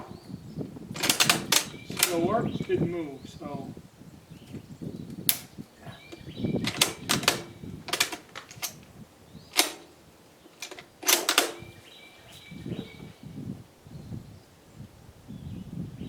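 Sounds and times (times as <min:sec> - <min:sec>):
rifle bolt action clicking: 0:01.0 - 0:02.2, 0:06.1 - 0:08.8, 0:09.6 - 0:09.9, 0:10.5 - 0:11.7.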